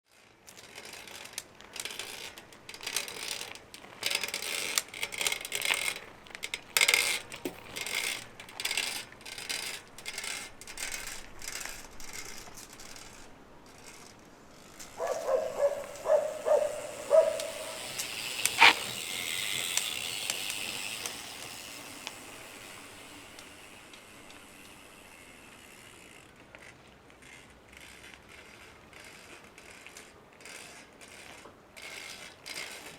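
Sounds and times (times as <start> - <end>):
freehub clicking and ratcheting: 0.5 - 32.9
hub squeaky creaks: 0.7 - 23.6.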